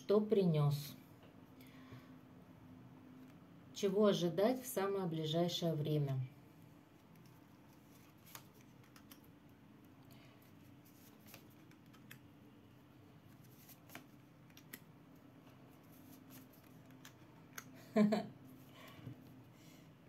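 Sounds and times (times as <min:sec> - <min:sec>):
cards being handled: 0:06.9 - 0:12.3, 0:13.2 - 0:17.8.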